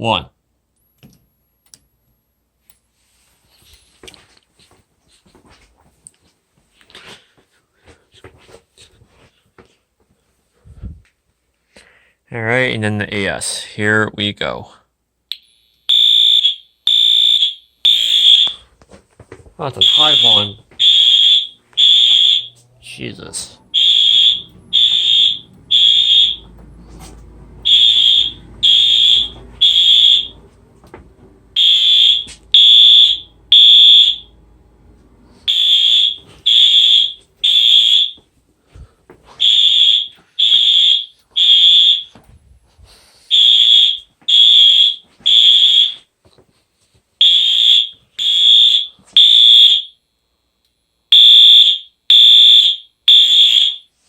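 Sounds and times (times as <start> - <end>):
fire alarm horn: 15.5 - 18.7, 19.8 - 30.6, 31.6 - 34.5, 35.4 - 38.3, 39.4 - 42.2, 43.3 - 46.1, 47.2 - 50.4, 51.0 - 54.0.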